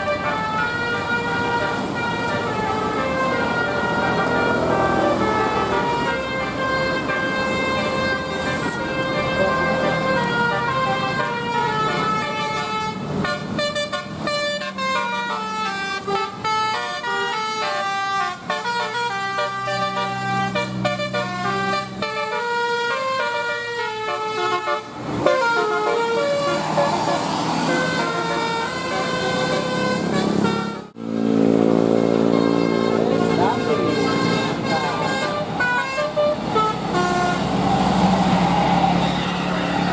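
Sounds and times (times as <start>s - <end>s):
multi-tone bus horn tune: 0.0s - 31.1s, 31.7s - 39.9s.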